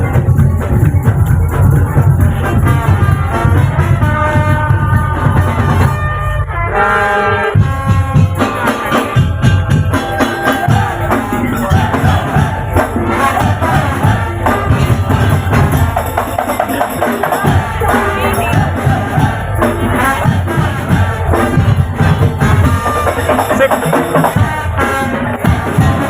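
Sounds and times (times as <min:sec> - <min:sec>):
heavy drumming and percussion: 0:00.0 - 0:06.2, 0:07.5 - 0:26.0
held wind instrument melody: 0:00.0 - 0:26.0.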